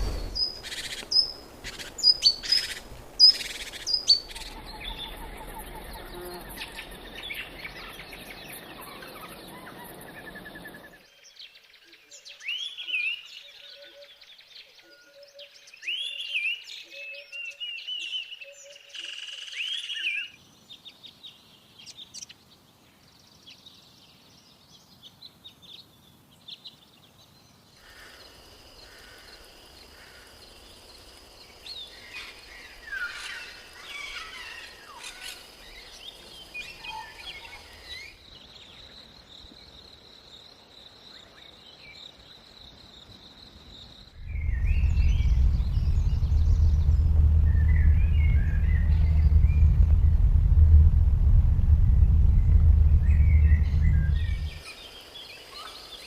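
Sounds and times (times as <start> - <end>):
birds chirping: 0.0 - 11.0, 44.1 - 50.4, 51.9 - 55.1
loud low rumble: 44.2 - 54.6.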